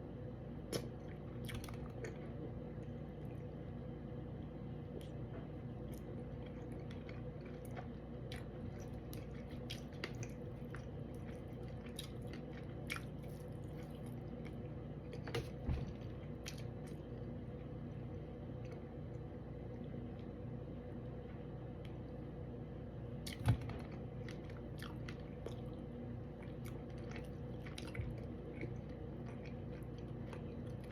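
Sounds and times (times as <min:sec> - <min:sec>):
person chewing fish: 0:05.8 - 0:15.6, 0:26.4 - 0:30.9.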